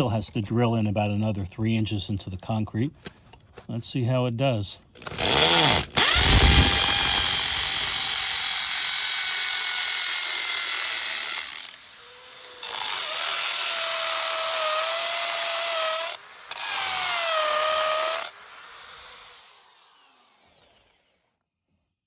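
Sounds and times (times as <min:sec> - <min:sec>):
hammer drill grinding into concrete: 0:05.0 - 0:21.3.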